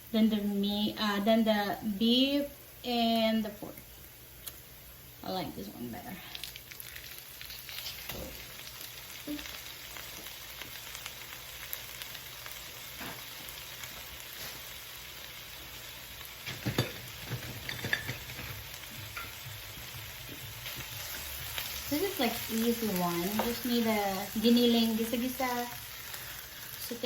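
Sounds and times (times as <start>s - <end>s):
meat sizzling in a pan: 6.3s - 27.0s.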